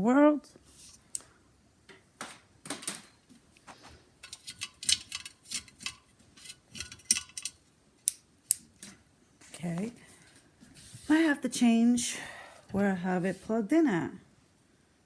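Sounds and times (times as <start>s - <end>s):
small hard parts clicking and clattering: 4.2s - 9.0s.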